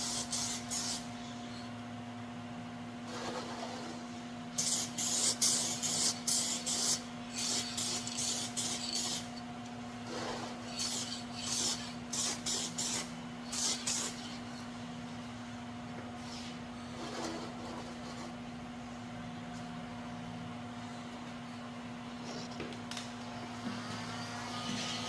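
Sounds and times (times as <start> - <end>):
spray paint can hissing: 0.0 - 1.0, 4.6 - 9.3, 10.8 - 14.2.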